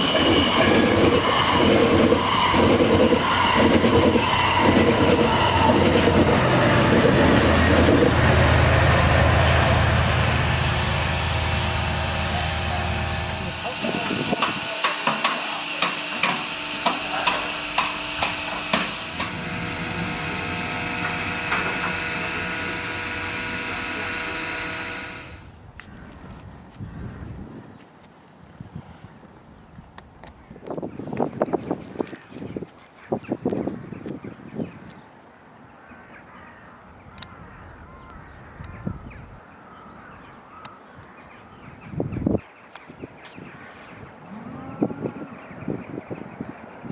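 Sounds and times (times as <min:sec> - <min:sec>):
steam train passing: 0:00.0 - 0:25.5.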